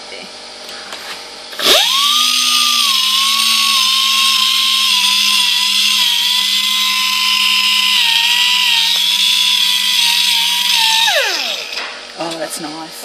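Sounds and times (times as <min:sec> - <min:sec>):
air sanding tool whine: 0:01.6 - 0:12.2.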